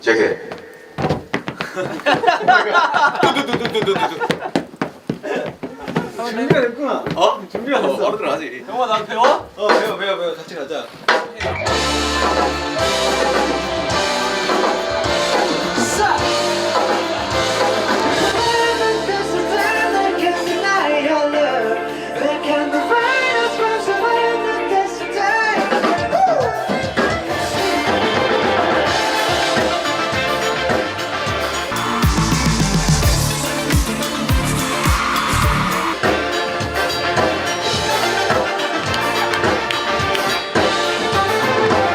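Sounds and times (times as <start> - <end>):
music with brass and drums: 11.1 - 20.8, 25.3 - 41.9
pop-rock band playing: 11.4 - 41.9
person singing: 11.7 - 41.9.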